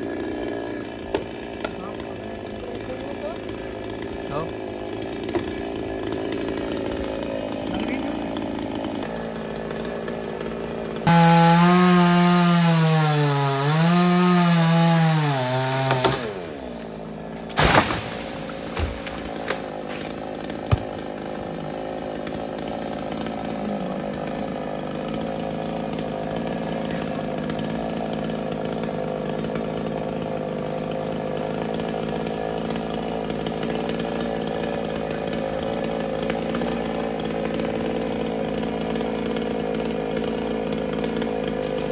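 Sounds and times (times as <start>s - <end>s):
chainsaw cutting at high revs: 0.0s - 41.9s
sharp knocks: 17.5s - 21.1s.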